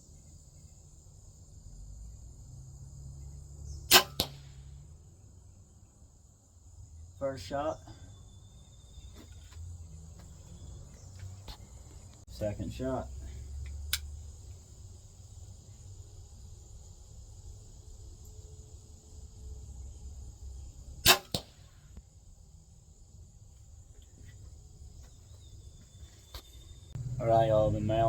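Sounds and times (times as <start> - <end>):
bolt striking target: 3.9 - 4.6, 21.0 - 21.6
crossbow string crack: 3.9 - 4.6, 21.0 - 21.6.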